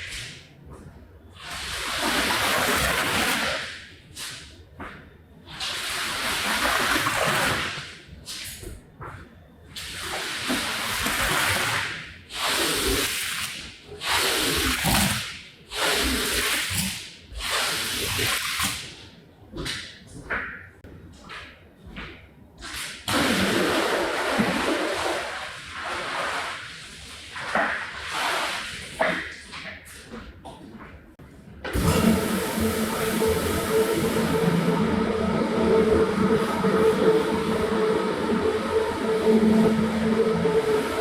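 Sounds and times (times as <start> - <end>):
water spraying onto a rug: 23.1 - 29.2.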